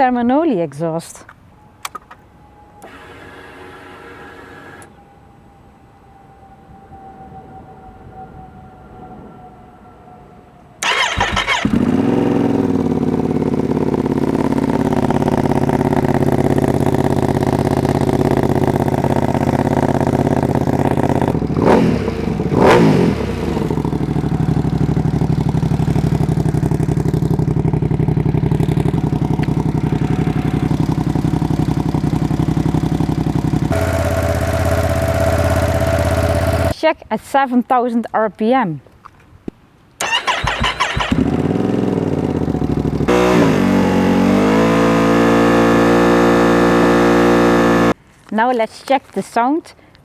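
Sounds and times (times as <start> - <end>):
motorcycle engine idling and revving: 1.8 - 4.9, 10.8 - 36.8, 40.0 - 48.0.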